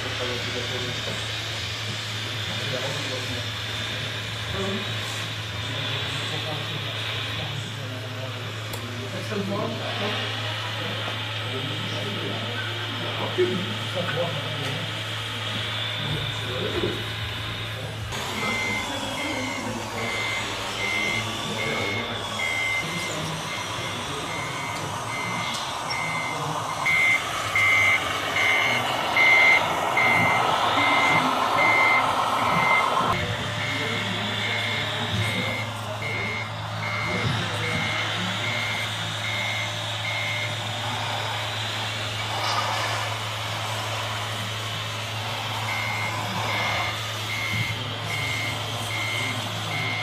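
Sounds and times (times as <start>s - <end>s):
reversing beeper beeping: 15.9s - 40.7s, 45.6s - 50.0s
low hum: 17.3s - 40.3s
rushing noise: 18.1s - 38.0s.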